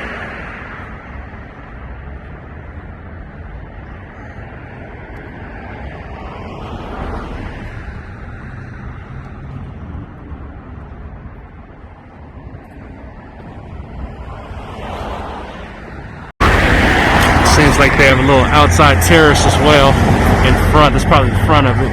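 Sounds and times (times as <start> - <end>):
low traffic rumble: 0.0 - 21.9
vehicle passing by: 13.5 - 21.9.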